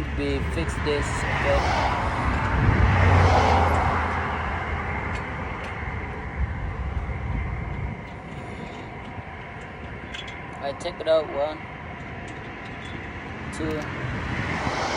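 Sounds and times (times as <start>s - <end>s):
vehicle passing by: 0.0s - 6.8s, 13.6s - 14.9s.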